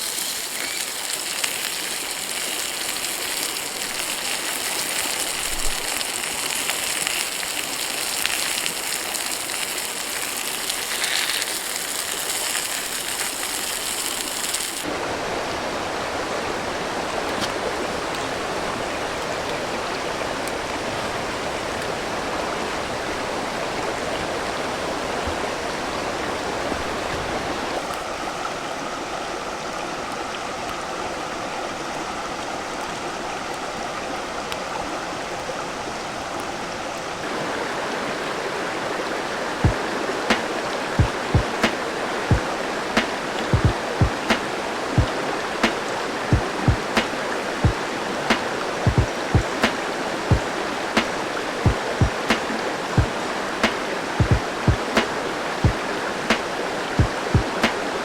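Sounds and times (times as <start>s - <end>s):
bright hiss with high tone: 0.0s - 14.9s
stream rushing: 0.0s - 58.0s.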